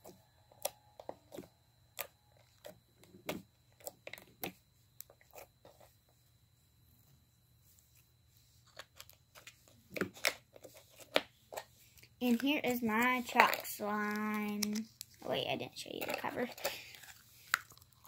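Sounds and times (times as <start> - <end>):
slime sticky crackles: 12.2 - 18.0.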